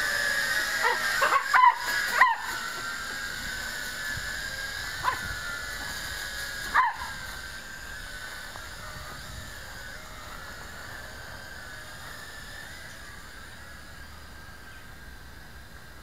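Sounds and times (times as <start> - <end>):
drone propellers whining: 0.0 - 16.0
dog yelping: 0.8 - 2.6, 5.0 - 5.2, 6.7 - 7.2.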